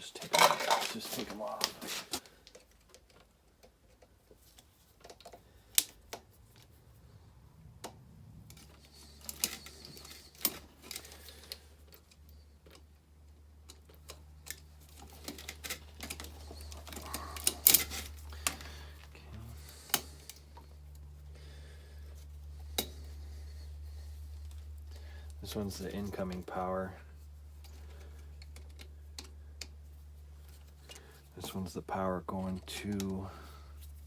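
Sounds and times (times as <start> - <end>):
low steady hum: 0.0 - 34.0
small clicks and taps on wiring: 1.6 - 6.7, 7.8 - 19.1, 27.6 - 29.8.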